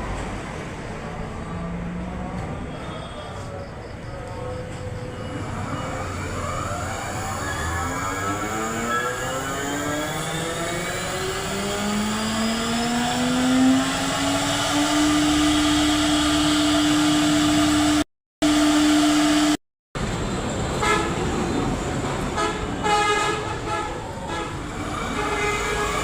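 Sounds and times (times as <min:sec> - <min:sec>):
router motors whining: 0:05.3 - 0:19.6.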